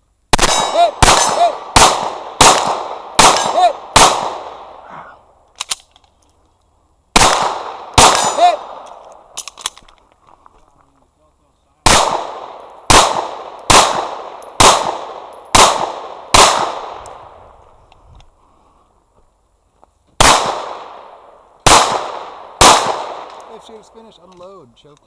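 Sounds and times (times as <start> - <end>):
pistol shots echoing: 0.3 - 4.9, 7.2 - 9.8, 11.8 - 17.6, 20.2 - 24.4.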